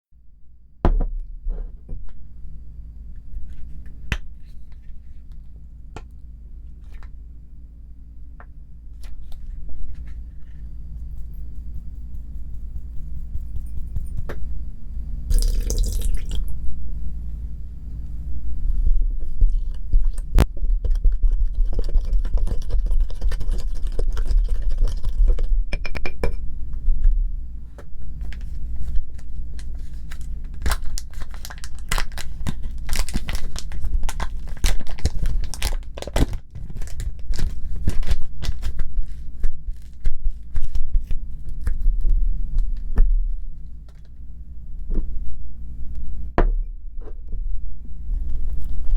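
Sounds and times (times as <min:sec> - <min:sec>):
low hum: 0:00.2 - 0:30.8, 0:39.1 - 0:48.9
slime squishing and crackling: 0:29.2 - 0:41.9.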